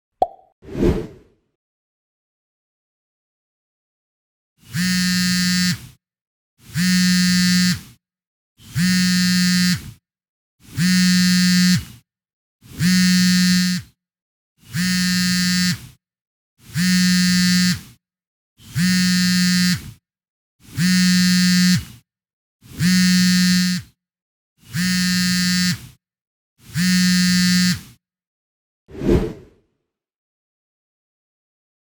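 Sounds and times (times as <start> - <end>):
mobile phone vibrating: 4.6 - 6.0, 6.6 - 8.0, 8.6 - 10.0, 10.6 - 12.0, 12.6 - 14.0, 14.6 - 16.0, 16.6 - 18.0, 18.6 - 20.0, 20.6 - 22.0, 22.6 - 24.0, 24.6 - 26.0, 26.6 - 28.0.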